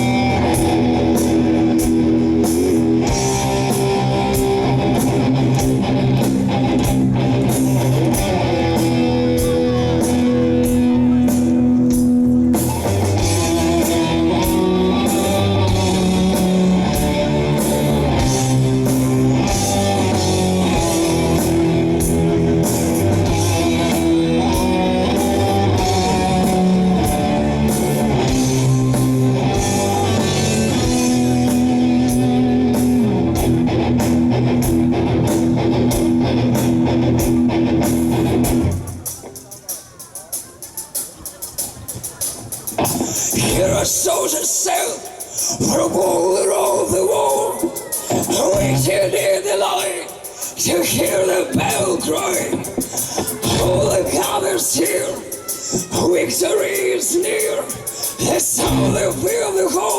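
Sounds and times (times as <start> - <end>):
bass guitar: 0.0 - 39.7, 42.6 - 44.3, 48.1 - 49.4, 50.6 - 55.1, 57.6 - 59.9
electric guitars: 0.0 - 39.7, 42.3 - 59.9
drum beat: 0.0 - 44.0.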